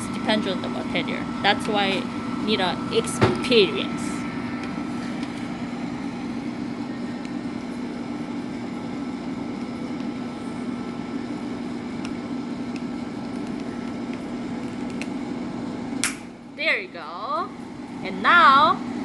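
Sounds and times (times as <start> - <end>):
hot-air blower fan hum: 0.0 - 19.0.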